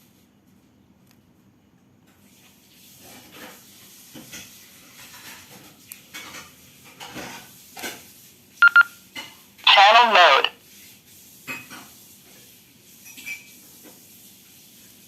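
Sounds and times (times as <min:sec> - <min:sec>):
radio static hiss: 0:08.6 - 0:08.9, 0:09.7 - 0:10.5.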